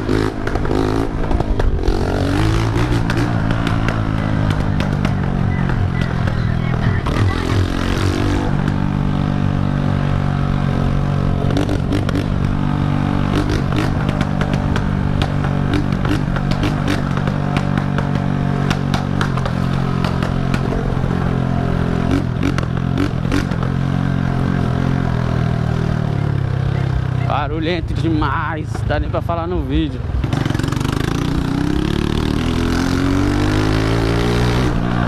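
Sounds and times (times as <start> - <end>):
motorcycle engine revving: 0.0 - 35.0.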